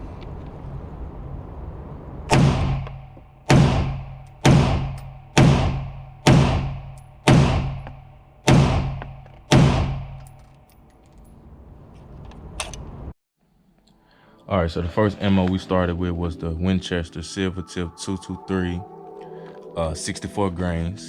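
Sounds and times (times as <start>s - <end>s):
rifle shots echoing: 2.3s - 10.3s.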